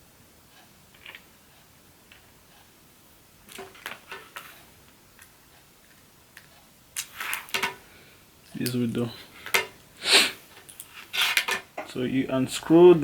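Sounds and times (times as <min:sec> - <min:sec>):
small tools clicking and rattling: 0:06.4 - 0:07.8.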